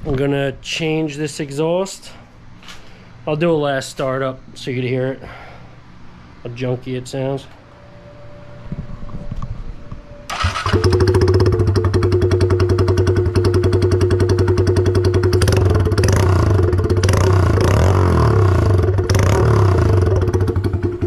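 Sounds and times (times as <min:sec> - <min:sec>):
motorcycle engine idling: 0:10.3 - 0:21.0
motorcycle engine starting: 0:10.3 - 0:21.0.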